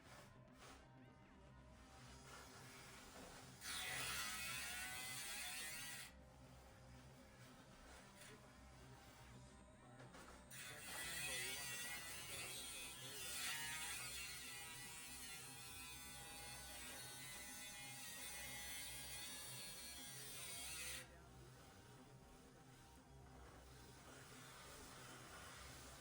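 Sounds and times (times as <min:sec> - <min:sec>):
electric power tool on metal: 0:02.7 - 0:06.2, 0:10.5 - 0:21.1.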